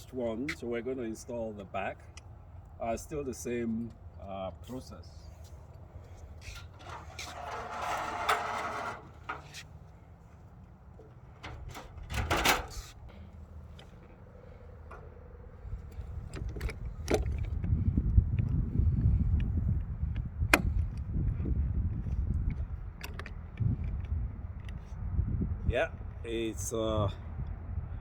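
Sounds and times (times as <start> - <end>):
roof crossbar rubbing and scraping: 6.2 - 9.8, 11.1 - 13.1.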